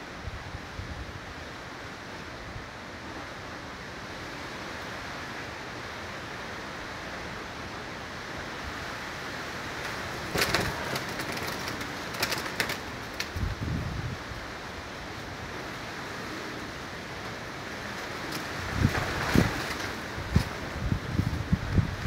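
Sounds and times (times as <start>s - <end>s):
wind and rain rushing: 0.0s - 22.0s
sharp clicks and rattles: 9.8s - 13.4s.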